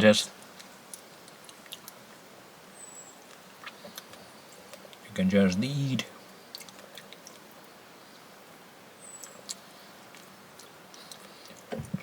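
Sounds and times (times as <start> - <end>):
person chewing wetly: 6.5 - 7.5, 9.2 - 11.7.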